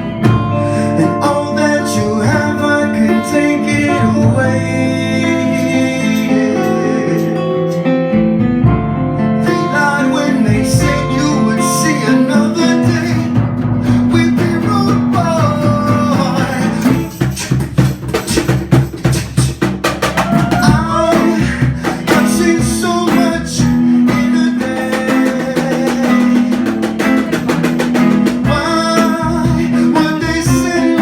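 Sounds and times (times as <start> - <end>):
guitar: 0.0 - 31.0
live band playing: 0.0 - 31.0
sharp percussive hits: 13.1 - 31.0.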